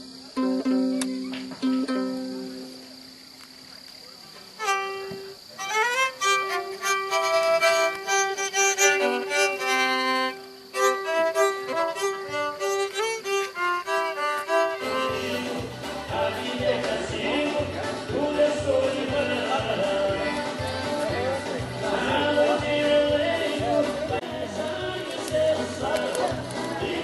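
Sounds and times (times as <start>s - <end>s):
fiddle playing folk melody: 4.6s - 16.9s
accompanying instruments: 4.6s - 27.0s.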